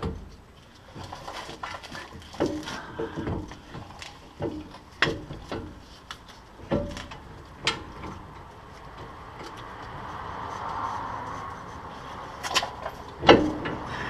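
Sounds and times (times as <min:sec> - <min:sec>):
sharp metal knocks and clunks: 0:00.0 - 0:09.6, 0:12.5 - 0:13.9.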